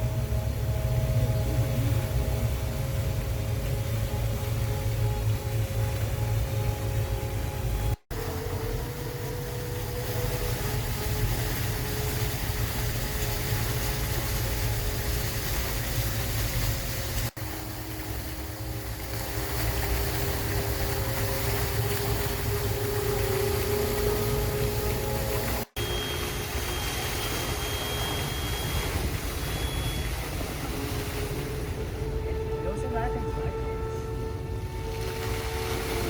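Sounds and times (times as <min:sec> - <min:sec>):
steady low rumble: 0:00.0 - 0:36.0
faint wavering held tones: 0:25.8 - 0:34.6.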